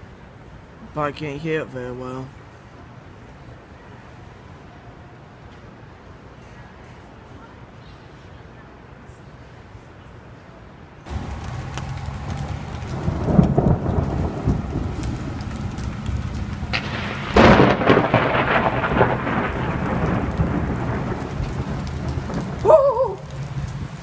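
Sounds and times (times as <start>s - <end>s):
heavy rain: 11.1s - 24.0s
rolling thunder: 11.1s - 24.0s
thunder crack: 11.1s - 24.0s.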